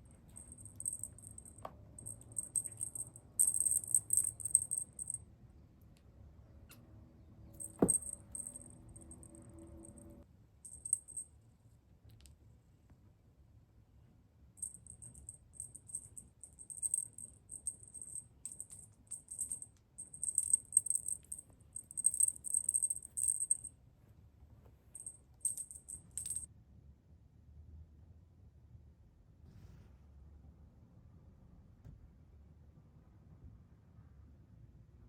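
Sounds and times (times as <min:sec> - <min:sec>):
small bell jingling: 0:00.2 - 0:05.2, 0:07.5 - 0:11.3, 0:14.6 - 0:23.7, 0:25.0 - 0:26.5.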